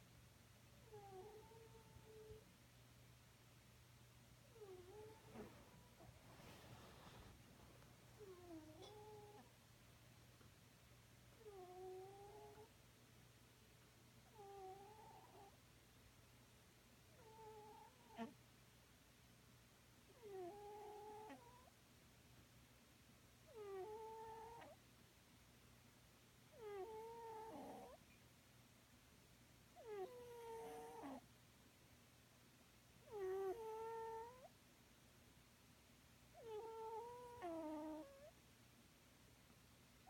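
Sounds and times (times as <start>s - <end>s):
cat snoring with squeaky whistle: 14.3s - 15.6s, 17.2s - 18.3s, 20.2s - 21.7s, 23.5s - 24.8s, 26.5s - 28.0s, 29.8s - 31.2s, 33.0s - 34.5s, 36.4s - 38.3s.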